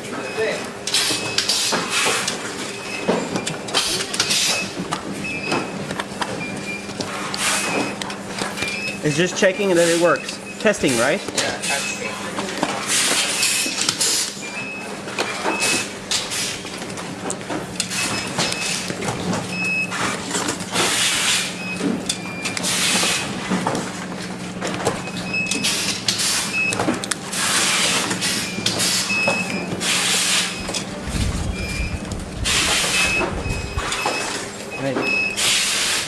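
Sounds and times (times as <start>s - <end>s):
steady machine hum: 15.9s - 34.8s
short high electronic beeps: 30.3s - 34.4s
low rumble: 30.9s - 33.9s.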